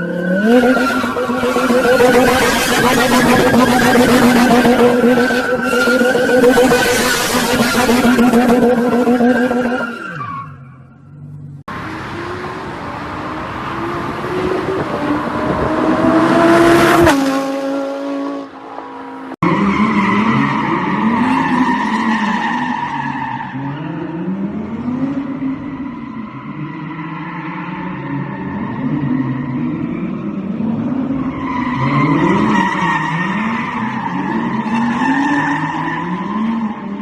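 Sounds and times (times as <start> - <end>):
car engine revving: 0.0 - 10.1, 10.7 - 22.7
tyres skidding: 0.0 - 37.0.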